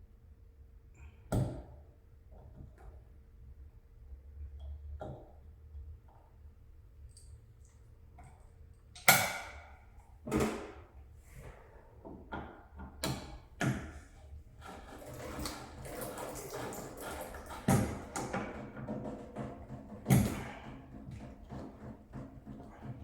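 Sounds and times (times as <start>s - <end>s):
tools knocking on faucet: 14.6s - 23.0s.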